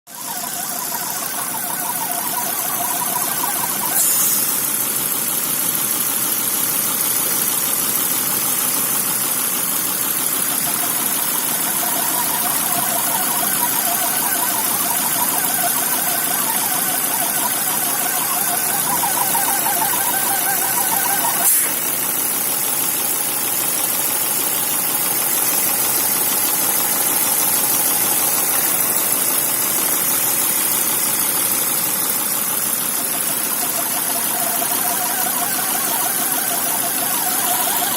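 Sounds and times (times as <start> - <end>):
engine whistle: 0.0 - 4.9, 10.0 - 22.6, 25.2 - 37.9
short sharp blips: 0.1 - 4.6, 10.4 - 21.9, 32.9 - 37.9
high steady tone: 0.1 - 4.8, 10.2 - 22.0, 32.5 - 37.9
wavering mid-pitched tones: 0.1 - 4.8, 10.3 - 22.0, 32.4 - 37.9
petrol engine running: 0.1 - 37.9.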